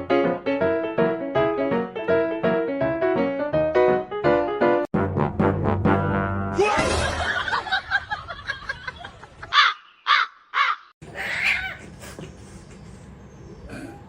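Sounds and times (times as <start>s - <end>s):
crow cawing: 9.5s - 11.7s.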